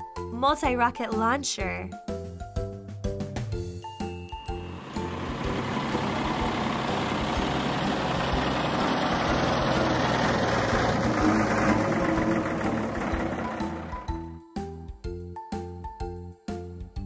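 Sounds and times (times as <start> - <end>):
heavy truck engine running: 4.4 - 14.2.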